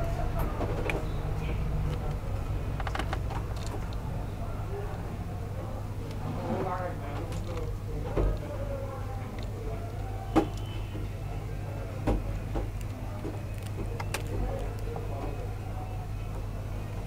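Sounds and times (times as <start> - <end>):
plastic parts clicking and knocking: 2.8 - 3.9, 12.0 - 15.4.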